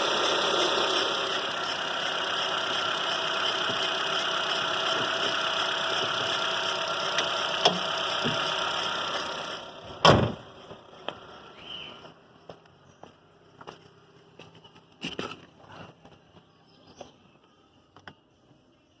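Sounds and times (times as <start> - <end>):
car engine idling: 0.0 - 14.4
faint engine clicks: 7.1 - 8.5
loud thump: 10.0 - 10.5.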